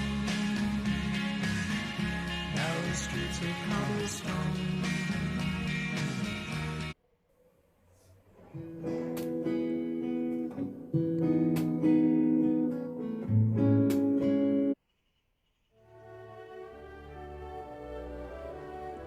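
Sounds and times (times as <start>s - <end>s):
song: 0.0s - 7.0s.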